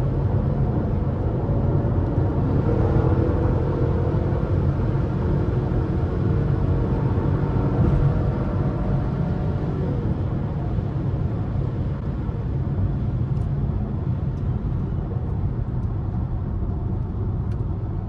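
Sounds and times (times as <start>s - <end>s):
car engine rumble: 0.0s - 18.0s.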